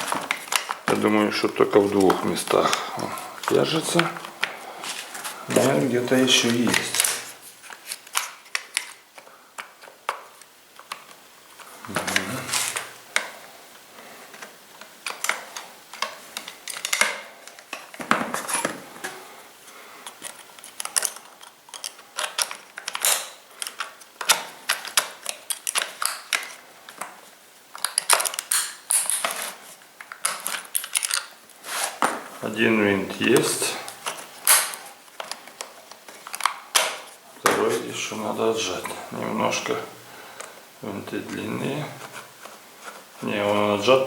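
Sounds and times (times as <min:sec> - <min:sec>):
plastic parts and screwdriver clicking: 0:00.0 - 0:02.8, 0:05.6 - 0:11.2, 0:14.3 - 0:18.8, 0:20.0 - 0:31.4, 0:33.2 - 0:37.6.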